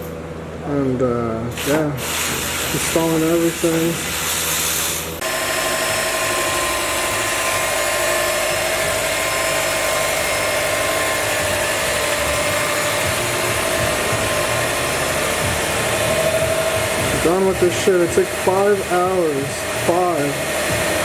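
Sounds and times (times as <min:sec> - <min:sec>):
car engine running: 0:05.2 - 0:21.0.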